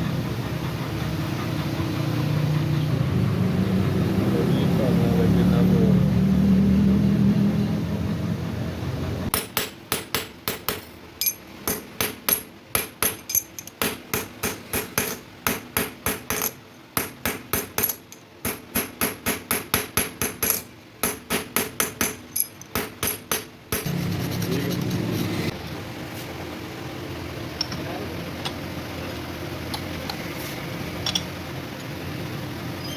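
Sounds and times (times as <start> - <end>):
hammer striking metal: 9.3 - 23.9.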